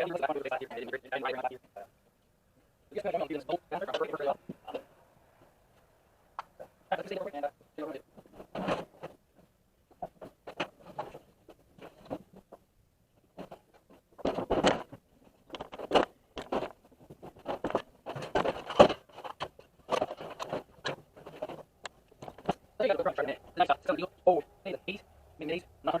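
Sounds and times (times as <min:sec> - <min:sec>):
objects knocking and scraping: 0:07.6 - 0:23.7.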